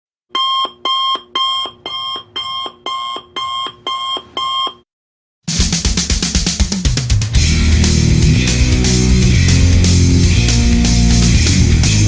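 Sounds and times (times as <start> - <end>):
electronic alarm beeping: 0.3 - 4.8
music with drums: 5.5 - 12.0.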